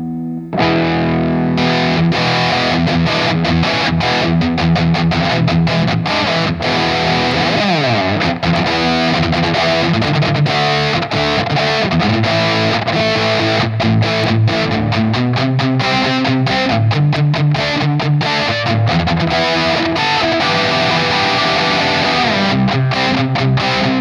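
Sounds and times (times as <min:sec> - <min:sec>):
distorted electric guitar riff: 0:00.0 - 0:24.0
guitar slide: 0:00.0 - 0:24.0.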